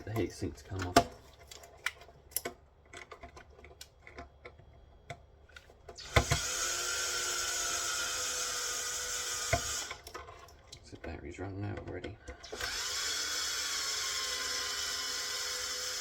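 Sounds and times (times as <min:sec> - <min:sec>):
cordless drill-driver whining: 0:06.0 - 0:10.1, 0:12.4 - 0:16.0.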